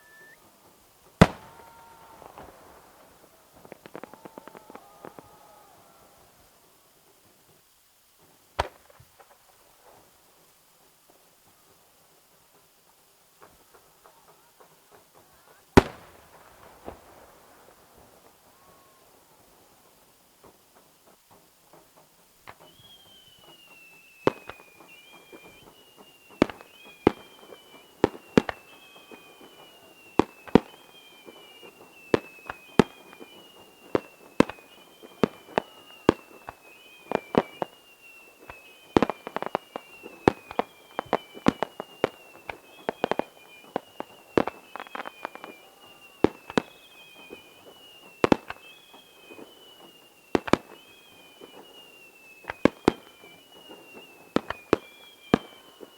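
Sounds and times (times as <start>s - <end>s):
faint falling whistle: 0.0s - 0.5s, 1.2s - 6.6s, 18.4s - 19.4s, 22.5s - 55.9s
fireworks bangs: 0.0s - 55.9s.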